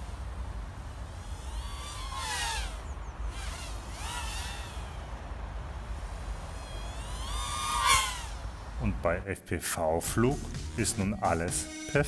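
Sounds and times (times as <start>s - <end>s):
drone motors buzzing: 0.0s - 9.2s.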